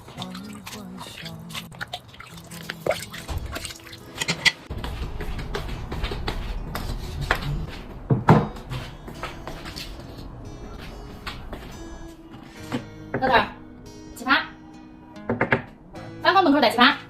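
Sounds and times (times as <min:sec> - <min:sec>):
kitchenware clattering: 0:03.4 - 0:04.7.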